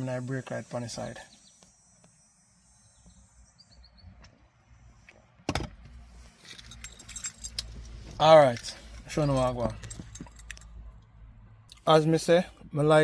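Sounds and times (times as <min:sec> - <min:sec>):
keys jangling: 0:06.5 - 0:07.9, 0:08.5 - 0:10.7.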